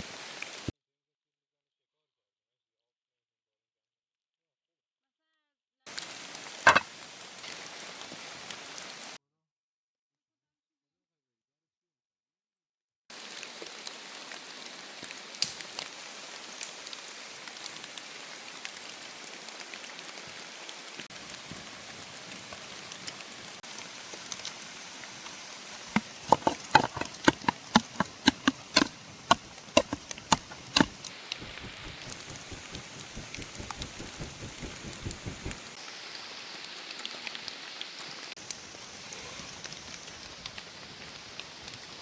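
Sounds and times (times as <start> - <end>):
steady rain on forest: 0.0 - 0.7, 5.9 - 9.2, 13.1 - 42.0
sharp knocks: 26.0 - 35.6.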